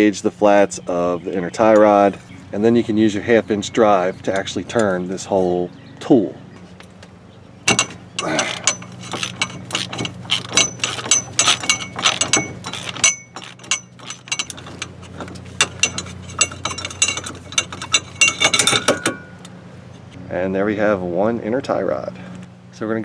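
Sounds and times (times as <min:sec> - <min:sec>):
steady low hum: 0:00.0 - 0:23.0
ratchet clicking: 0:07.7 - 0:19.2
metallic clinks: 0:07.7 - 0:19.5.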